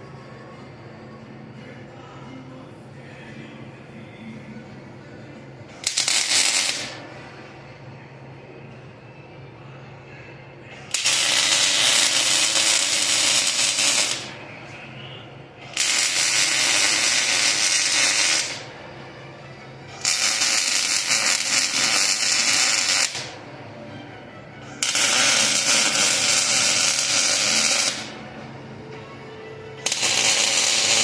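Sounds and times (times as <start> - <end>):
welding arc crackling: 5.8 - 7.0, 10.9 - 14.3, 15.7 - 18.7, 20.0 - 23.4, 24.8 - 28.2, 29.8 - 31.0.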